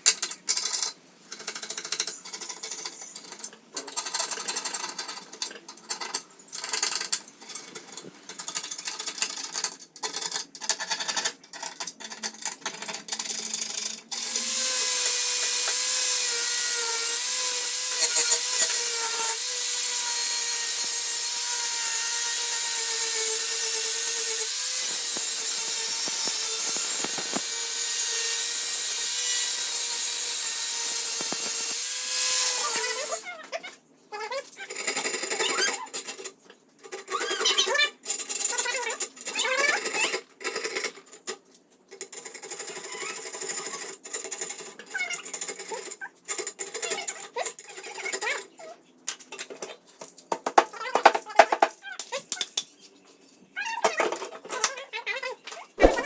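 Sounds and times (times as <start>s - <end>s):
power tool high whine: 14.2s - 33.2s.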